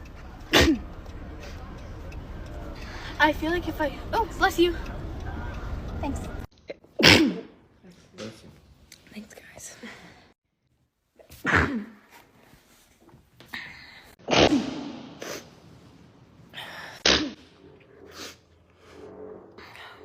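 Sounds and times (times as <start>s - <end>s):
person sneezing: 7.0s - 7.6s, 11.3s - 12.2s, 17.0s - 17.4s.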